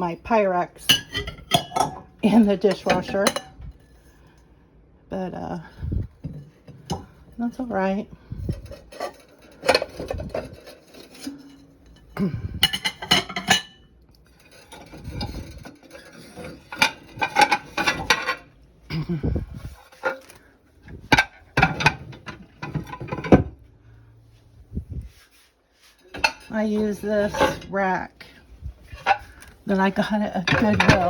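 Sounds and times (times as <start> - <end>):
dishes and glassware clinking: 0.9 - 3.6, 8.7 - 18.5, 30.4 - 31.0.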